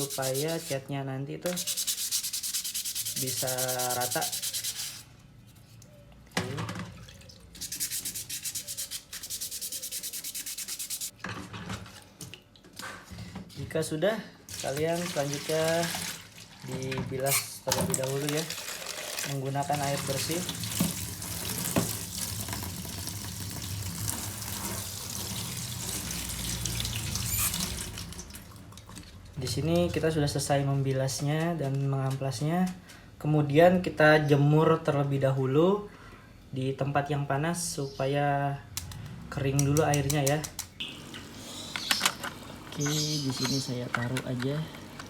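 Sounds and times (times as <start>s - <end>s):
sandpaper rubbing on plastic: 0.0s - 0.8s, 1.5s - 5.1s, 7.6s - 11.1s
water running: 0.0s - 0.8s, 14.5s - 29.0s.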